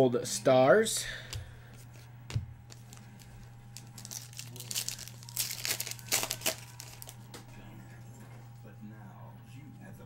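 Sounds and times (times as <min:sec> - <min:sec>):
foil wrapper crinkling and tearing: 0:02.7 - 0:07.3.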